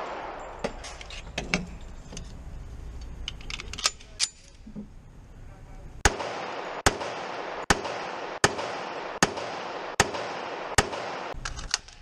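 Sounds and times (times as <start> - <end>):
gunshots: 0.0 - 0.6, 6.0 - 12.0.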